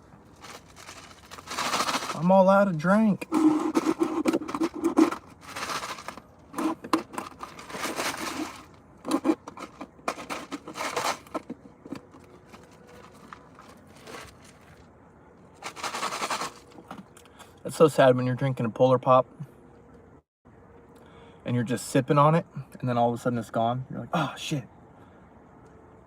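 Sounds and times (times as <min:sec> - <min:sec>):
straw slurping in empty cup: 0:03.2 - 0:05.2.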